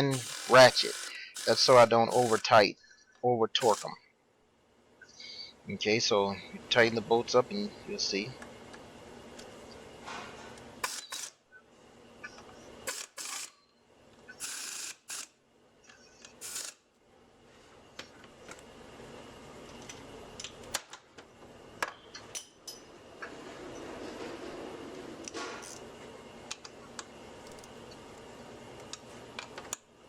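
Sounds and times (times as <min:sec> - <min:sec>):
hand ratchet clicking: 0:00.0 - 0:02.5, 0:03.6 - 0:03.9, 0:10.8 - 0:11.3.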